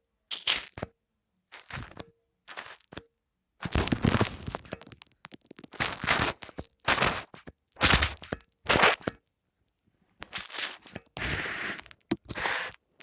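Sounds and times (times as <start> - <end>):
foam squeezed crackling: 3.6 - 9.1, 10.2 - 12.8.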